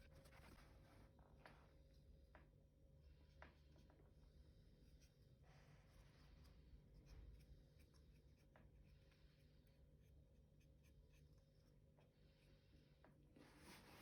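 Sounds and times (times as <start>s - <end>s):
faint scratching strokes: 4.6s - 14.0s.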